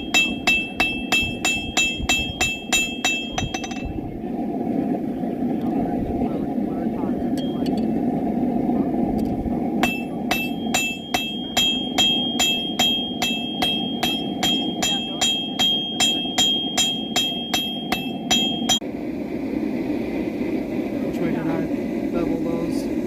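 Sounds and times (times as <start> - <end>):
hammer ringing on anvil: 0.0 - 3.9, 9.8 - 18.8.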